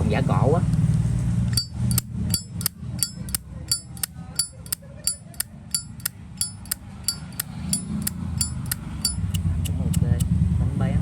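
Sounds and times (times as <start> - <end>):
metal lighter clicking: 1.5 - 10.3.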